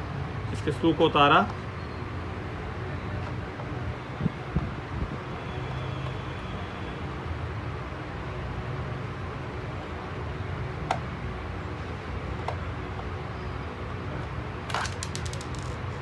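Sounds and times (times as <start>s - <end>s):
plastic toy car clicks: 14.7s - 15.8s.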